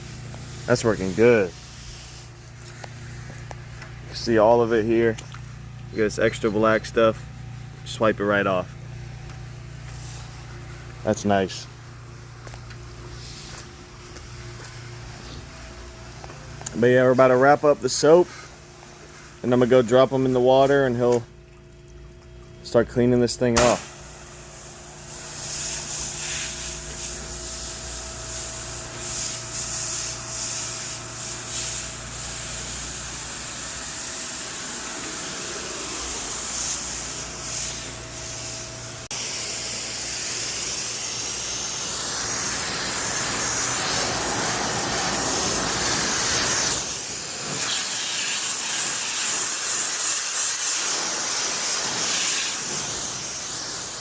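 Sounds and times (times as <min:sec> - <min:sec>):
high-pressure water spray hissing: 0:00.0 - 0:06.8, 0:23.6 - 0:54.0
pressure washer engine hum: 0:00.0 - 0:54.0.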